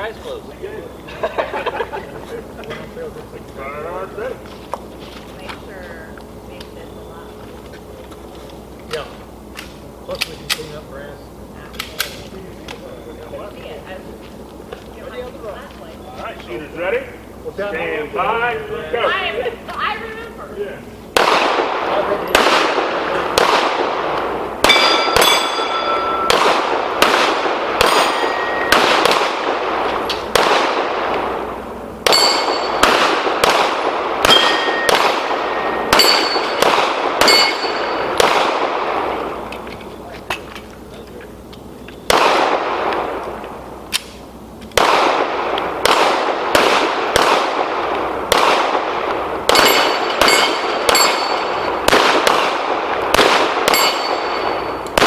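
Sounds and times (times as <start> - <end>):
pistol shots echoing: 21.2 - 39.6, 42.0 - 44.2, 44.8 - 55.0
bullets clanging on steel targets: 24.6 - 26.7, 27.8 - 28.9, 32.0 - 33.6, 34.2 - 38.3, 49.5 - 51.9, 53.7 - 55.0.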